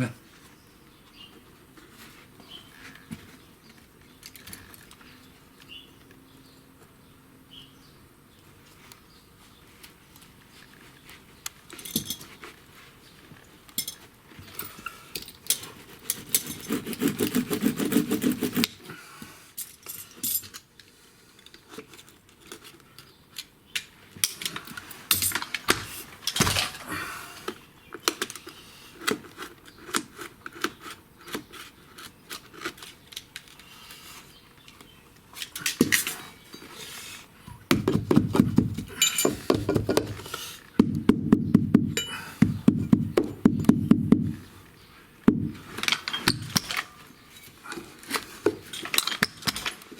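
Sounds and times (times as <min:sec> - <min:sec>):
metal tools clinking: 0:11.7 - 0:12.4, 0:13.7 - 0:15.7, 0:38.9 - 0:40.0, 0:42.0 - 0:42.3, 0:45.8 - 0:47.6, 0:48.7 - 0:49.8.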